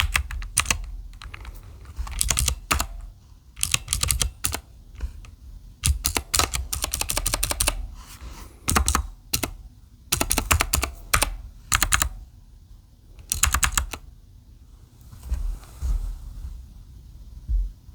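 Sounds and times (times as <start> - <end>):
mechanical keyboard typing: 0.0 - 7.8, 8.7 - 12.2, 13.2 - 14.1.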